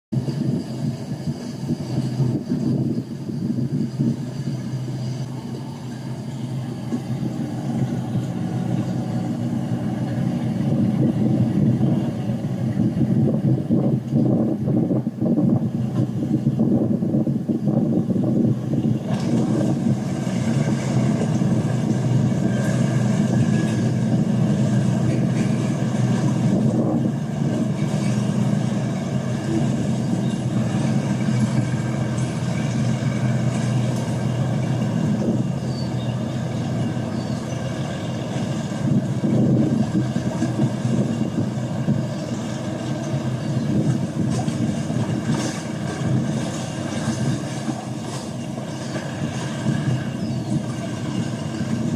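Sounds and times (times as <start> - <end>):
wind: 0.0 - 51.9
boat engine droning: 0.1 - 51.9
river water: 0.2 - 51.9.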